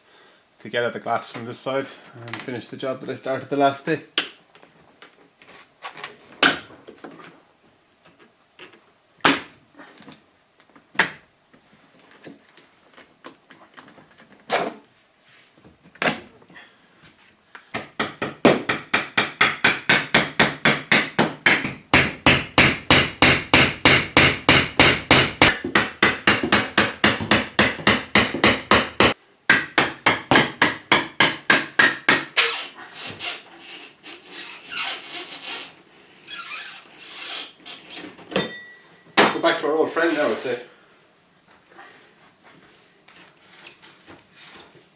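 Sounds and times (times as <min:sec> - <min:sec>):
sharp knocks: 0:17.8 - 0:32.4.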